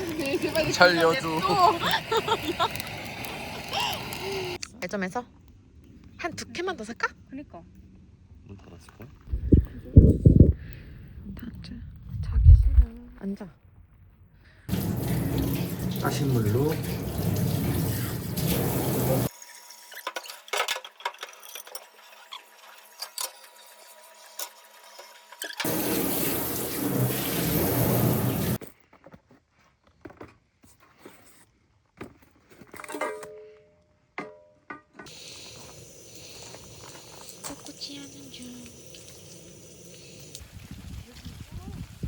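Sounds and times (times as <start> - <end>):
tap water running into a sink: 0.0 - 4.6, 14.7 - 28.6, 35.1 - 42.0.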